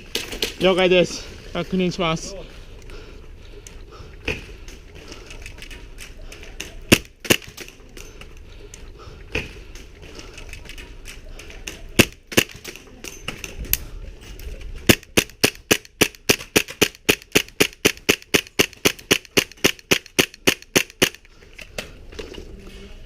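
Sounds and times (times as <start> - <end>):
airsoft gun firing: 6.9 - 7.8, 12.0 - 12.8, 14.9 - 21.2.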